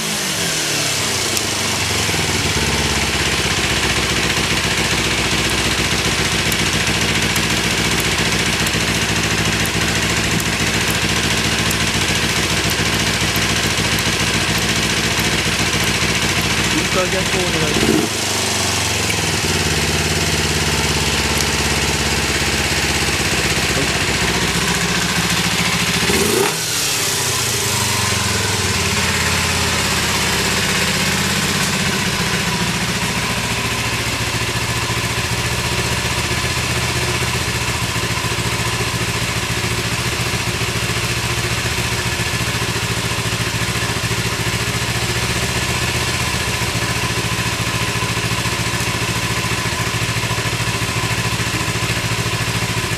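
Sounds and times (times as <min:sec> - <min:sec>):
motorcycle engine idling: 0:00.0 - 0:52.9
motorcycle exhaust blip: 0:01.3 - 0:52.9.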